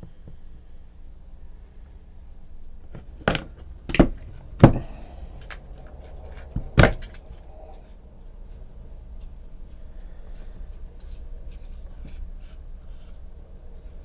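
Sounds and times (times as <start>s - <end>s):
hard objects knocking: 2.9s - 7.4s.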